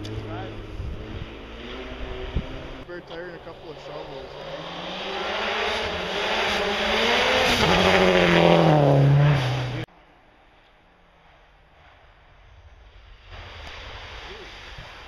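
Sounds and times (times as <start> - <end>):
rally car engine revving: 0.0 - 9.9
faint outdoor background: 0.0 - 15.0.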